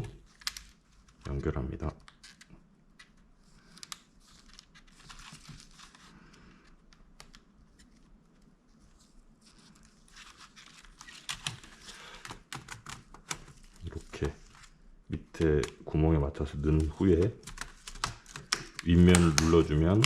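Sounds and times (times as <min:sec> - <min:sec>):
laptop keyboard being handled: 0:10.1 - 0:14.7, 0:16.7 - 0:20.0.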